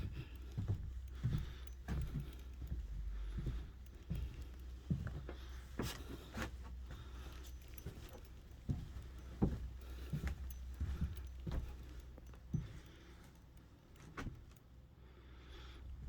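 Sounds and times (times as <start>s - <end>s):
footsteps on bare floor: 0.0s - 12.8s
light metallic jingle: 0.0s - 14.8s.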